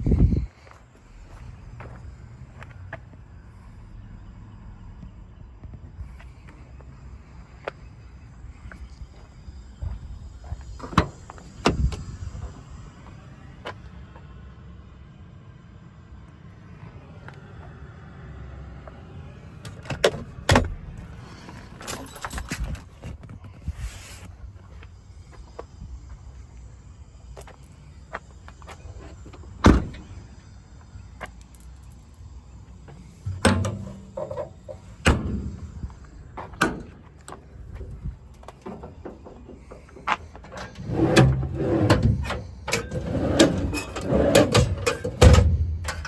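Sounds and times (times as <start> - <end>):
metal clattering: 37.9 - 46.0
metal compartment doors knocking: 38.6 - 46.0.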